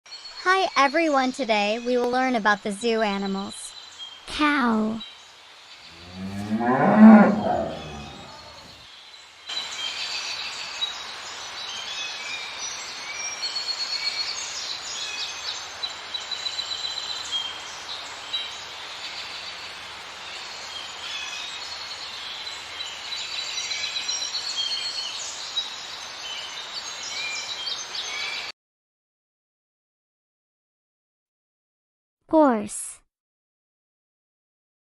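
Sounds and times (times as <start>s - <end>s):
outdoor background noise: 0.1s - 28.5s
small birds chirping: 0.3s - 8.8s
cow mooing: 5.9s - 8.7s.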